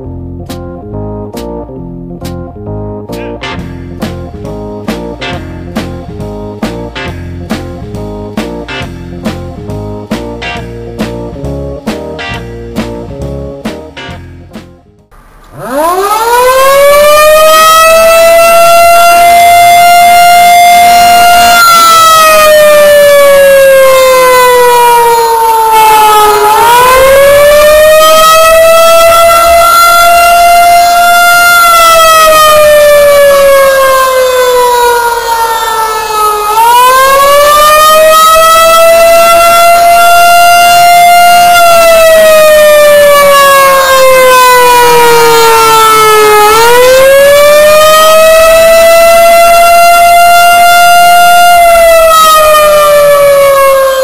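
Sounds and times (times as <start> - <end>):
warning siren: 15.1 - 54.0.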